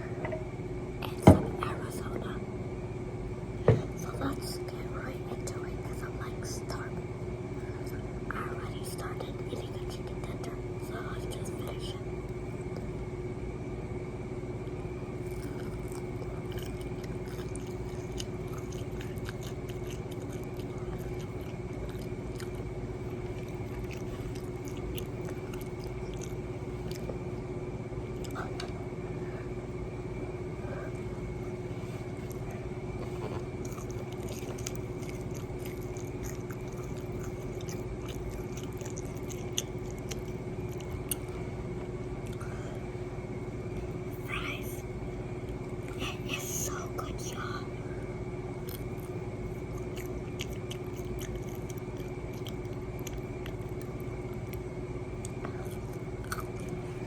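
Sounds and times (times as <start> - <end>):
steady background hum: 0.0 - 57.0
chewing and crunching: 15.0 - 27.5, 28.2 - 28.9, 30.0 - 44.5, 48.5 - 57.0
wet mouth sounds: 15.2 - 27.2, 33.6 - 41.4, 48.6 - 54.6, 55.2 - 57.0.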